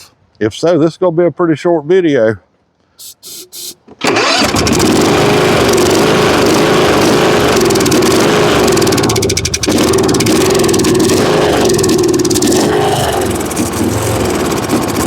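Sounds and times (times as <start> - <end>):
mower engine cranking and firing: 3.8 - 15.0.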